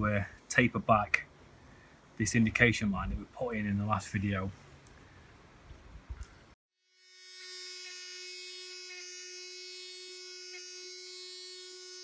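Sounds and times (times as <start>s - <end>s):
orbital sander whining: 6.9s - 12.0s.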